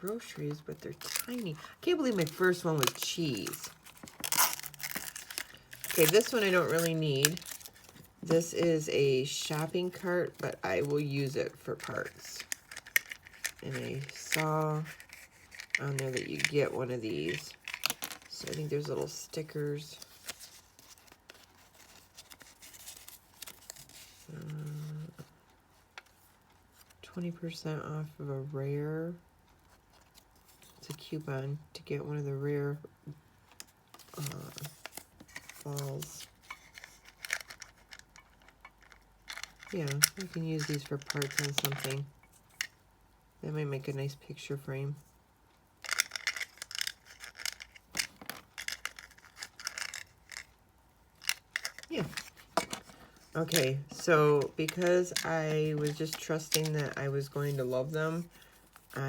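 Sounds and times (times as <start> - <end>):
packaging rustling and clicking: 0.0 - 8.6, 11.7 - 25.0, 33.5 - 42.8, 45.8 - 50.6, 51.2 - 59.0
plastic toy pieces clicking: 45.8 - 50.4.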